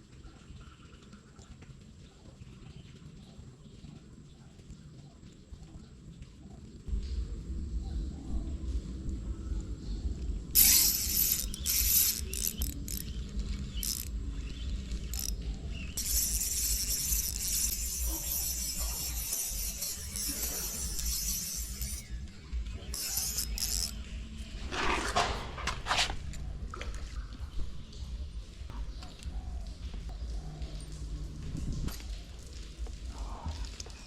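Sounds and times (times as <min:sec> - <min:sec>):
steady low rumble: 0:06.9 - 0:10.7
fishing reel ratcheting: 0:10.5 - 0:24.1.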